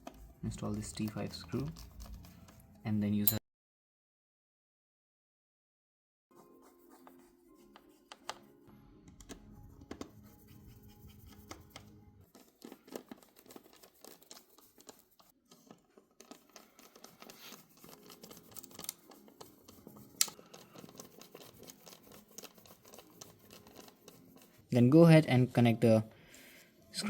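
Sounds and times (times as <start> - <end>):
screwdriver clicks and scratches: 11.4 - 24.2.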